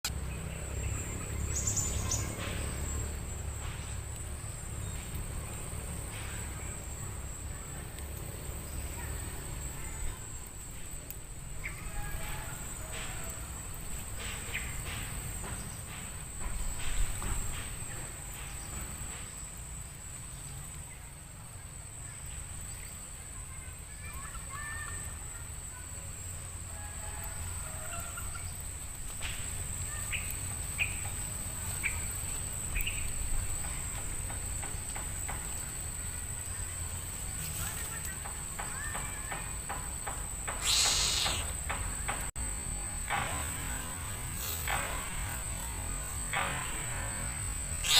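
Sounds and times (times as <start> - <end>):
bird chirps: 0.2 - 3.4, 40.5 - 41.7
high-pitched insect drone: 35.5 - 41.8, 42.4 - 47.9.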